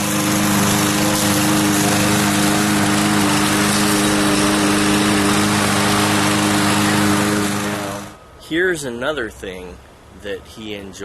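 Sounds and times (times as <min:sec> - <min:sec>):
vacuum cleaner running: 0:00.0 - 0:08.2.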